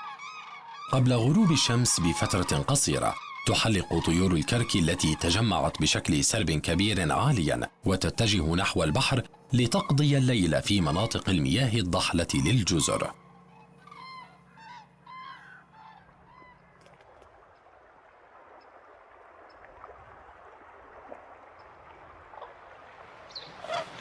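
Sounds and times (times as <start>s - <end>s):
cranes trumpeting calls: 0.0s - 6.0s, 8.1s - 19.0s, 23.3s - 24.0s.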